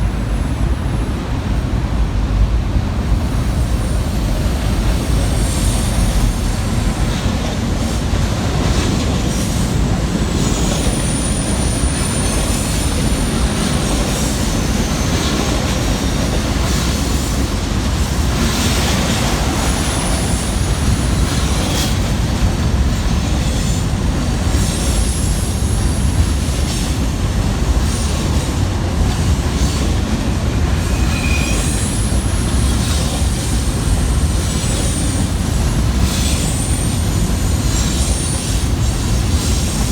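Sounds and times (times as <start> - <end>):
train wheels rumbling on rails: 0.0 - 39.9
high-pitched wheel squeals: 10.3 - 15.2, 30.8 - 35.3.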